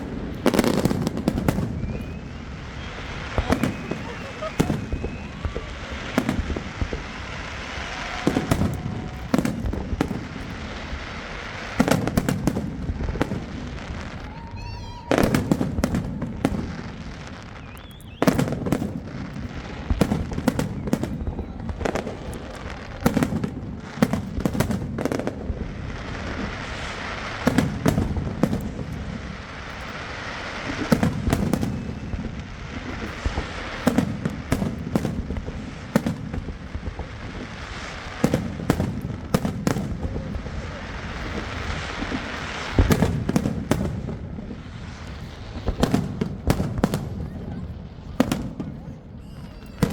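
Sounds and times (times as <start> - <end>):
firework whistle: 0.0 - 49.9
fireworks booming and crackling: 0.0 - 49.9.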